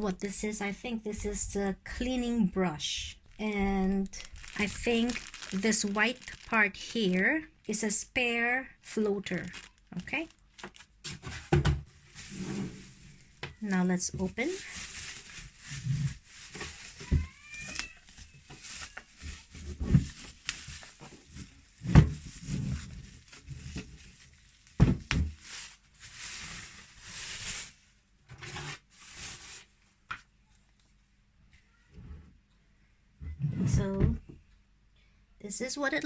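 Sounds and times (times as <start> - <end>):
plastic and paper crinkling: 3.0 - 8.0, 8.8 - 27.9, 28.6 - 29.8.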